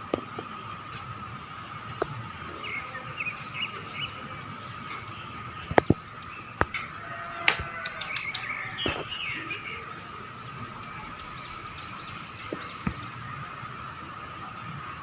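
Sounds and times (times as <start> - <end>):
bird chirping: 2.0 - 13.6
sharp clicks: 6.6 - 9.0.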